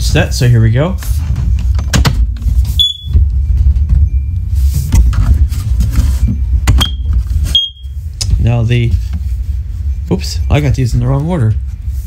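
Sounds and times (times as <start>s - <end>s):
low rumble: 0.0s - 12.0s
smoke alarm chirp: 2.7s - 4.7s, 6.2s - 8.1s.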